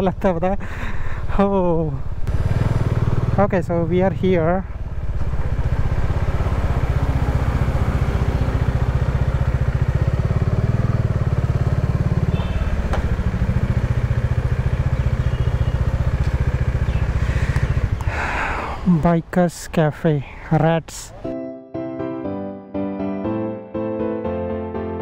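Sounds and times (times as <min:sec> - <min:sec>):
motorcycle engine running: 0:02.0 - 0:18.7.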